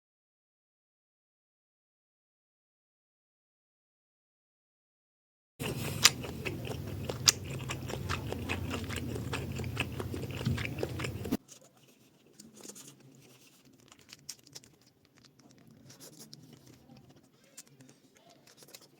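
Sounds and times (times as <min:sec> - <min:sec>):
steady low hum: 0:05.6 - 0:11.4
wet mouth clicks: 0:05.6 - 0:11.4, 0:13.6 - 0:18.9
person chewing food: 0:05.6 - 0:18.9.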